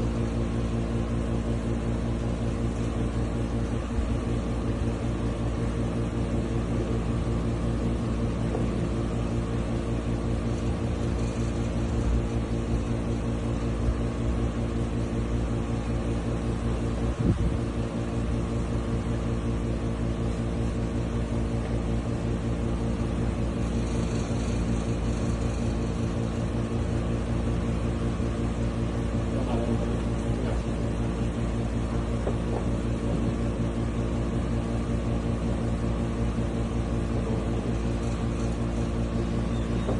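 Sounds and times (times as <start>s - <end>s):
steady mechanical hum: 0.0s - 39.9s.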